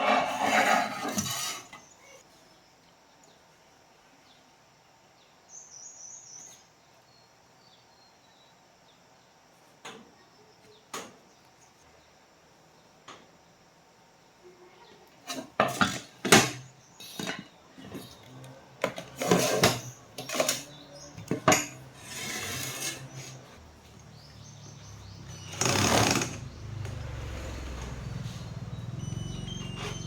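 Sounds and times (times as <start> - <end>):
scrape or rustle: 0.0 - 1.8, 19.1 - 20.5, 21.9 - 23.6
tools clattering on a workbench: 15.3 - 23.5.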